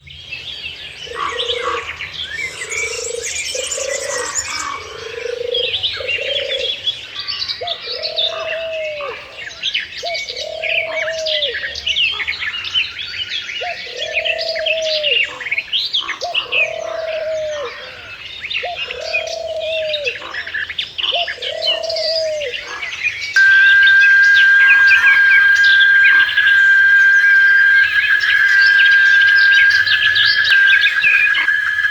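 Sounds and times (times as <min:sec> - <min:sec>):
lower bird call: 0:23.4 - 0:31.9.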